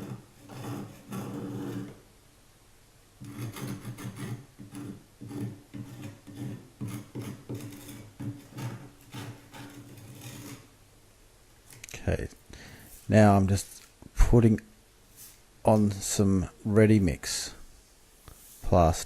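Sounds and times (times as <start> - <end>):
blade scraping plaster off wall: 0.0 - 2.0, 3.2 - 10.7.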